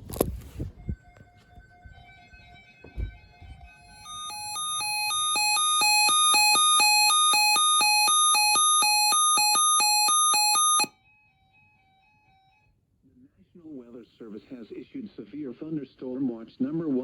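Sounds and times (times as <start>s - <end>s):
two-tone electronic alarm beeping: 3.6s - 10.9s.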